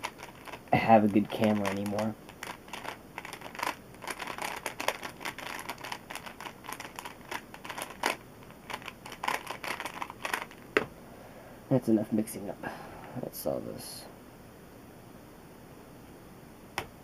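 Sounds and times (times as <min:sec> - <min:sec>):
puzzle cube clicking and rattling: 0:00.0 - 0:10.6.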